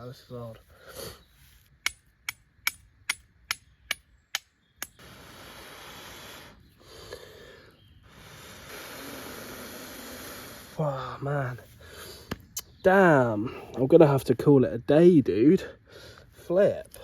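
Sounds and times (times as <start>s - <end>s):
flint and steel strikes: 1.8s - 5.0s
blowing into tinder: 5.0s - 6.7s, 8.1s - 10.8s.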